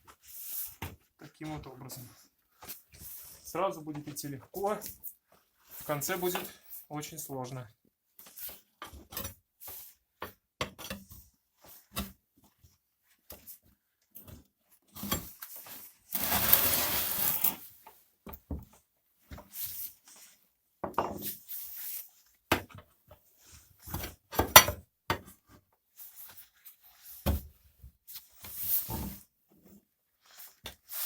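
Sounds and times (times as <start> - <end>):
tyre scraping on metal rim: 16.1 - 17.7.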